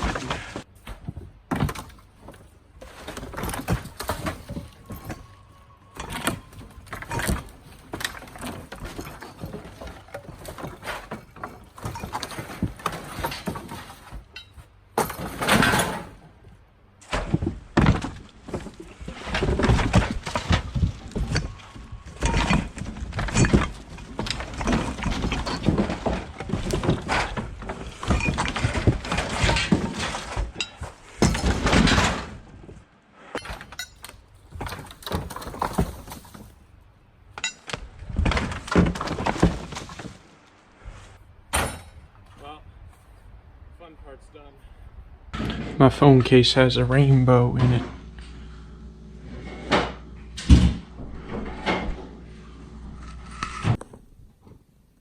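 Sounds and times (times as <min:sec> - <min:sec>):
clatter of breaking pieces: 0:06.0 - 0:16.2, 0:17.1 - 0:32.5, 0:33.3 - 0:36.6.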